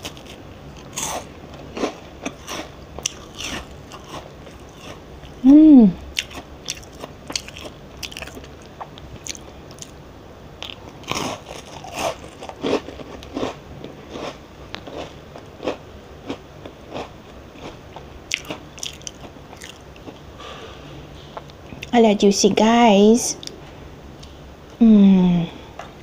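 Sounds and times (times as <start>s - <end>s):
cookie crunching: 0.0s - 5.4s, 6.1s - 10.0s, 10.6s - 20.2s.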